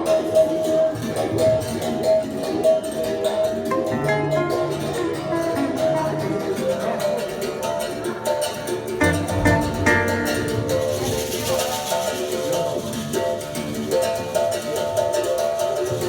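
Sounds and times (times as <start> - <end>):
acoustic guitar playing: 3.7 - 6.6, 9.0 - 12.1
bongo drums: 8.8 - 14.6.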